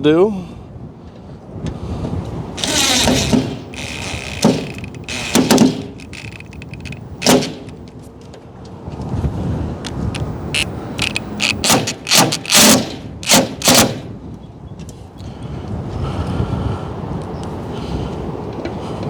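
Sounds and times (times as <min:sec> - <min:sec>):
tools clunking and rattling: 0:02.6 - 0:07.9, 0:10.2 - 0:14.1.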